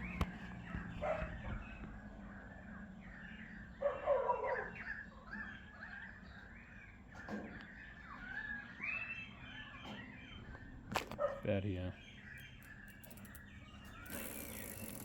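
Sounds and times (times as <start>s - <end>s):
birds chirping: 0.0s - 15.0s
dog barking: 1.0s - 1.5s, 3.8s - 5.0s, 11.2s - 11.5s.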